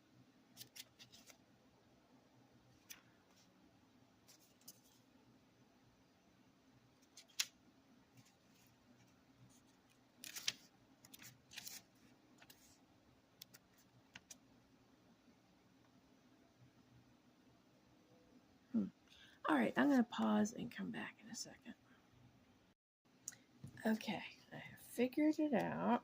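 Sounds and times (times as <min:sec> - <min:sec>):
faint low room hum: 0:00.0 - 0:26.0
cards clicking and rustling: 0:07.0 - 0:07.6, 0:10.2 - 0:12.6.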